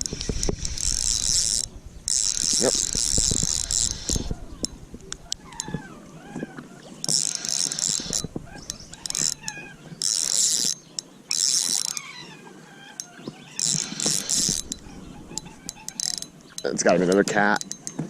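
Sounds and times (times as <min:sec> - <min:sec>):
fishing reel whirring: 0:00.0 - 0:05.8, 0:07.0 - 0:12.2, 0:13.0 - 0:18.0.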